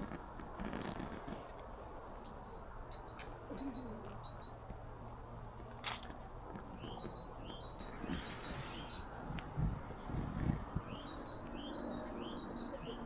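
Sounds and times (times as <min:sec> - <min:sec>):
small bird chirping: 0:00.4 - 0:05.0, 0:06.7 - 0:09.1, 0:10.8 - 0:13.0.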